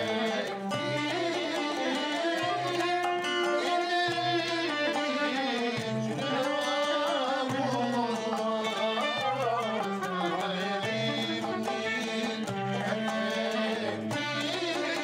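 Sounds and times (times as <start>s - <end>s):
plucked string melody: 0.0s - 15.0s.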